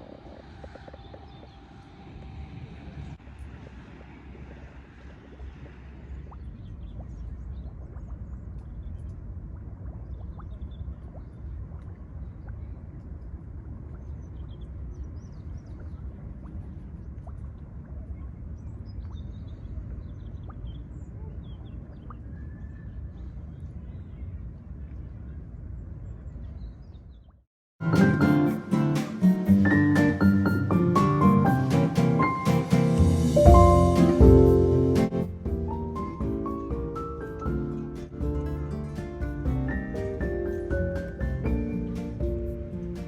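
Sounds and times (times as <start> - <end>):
wind rumble on microphone: 0.0 - 27.2.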